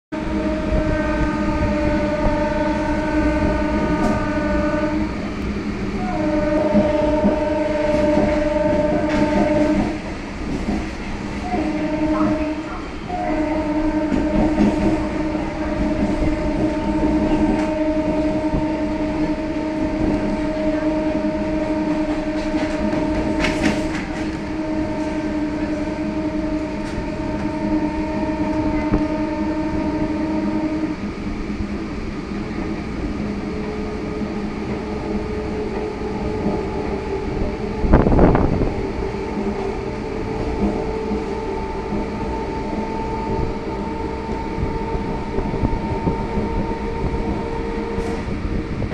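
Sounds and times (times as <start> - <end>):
train horn blast: 0.1 - 10.7, 11.3 - 48.9
electric train running: 0.2 - 48.9.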